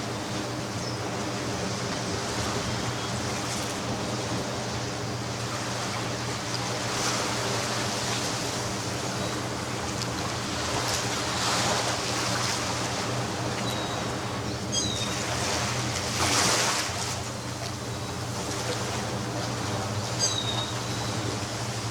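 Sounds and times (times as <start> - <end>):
ocean surf on a beach: 0.0 - 21.9
high bird call: 20.2 - 21.1.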